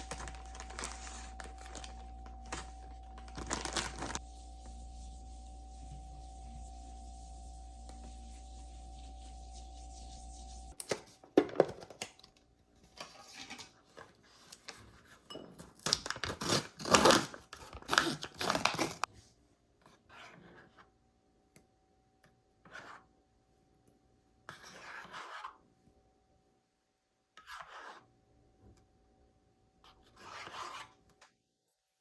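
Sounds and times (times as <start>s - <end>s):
steady low hum: 0.0s - 10.8s
rasping rub against paper: 2.5s - 10.7s.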